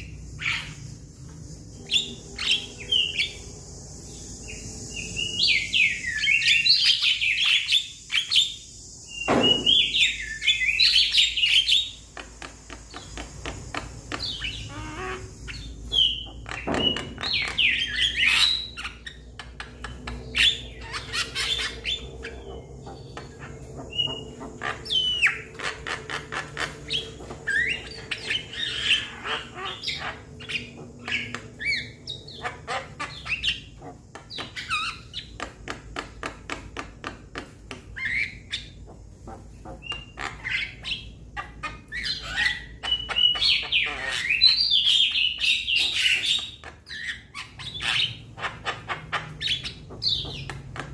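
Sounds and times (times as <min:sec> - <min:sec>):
bird clicking chatter: 0:12.1 - 0:15.0
bird harsh squealing calls: 0:13.6 - 0:35.4, 0:38.0 - 0:50.9.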